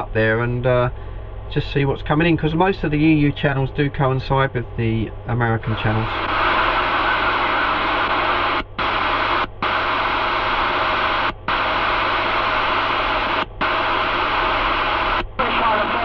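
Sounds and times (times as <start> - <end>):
radio static hissing: 5.6 - 16.0.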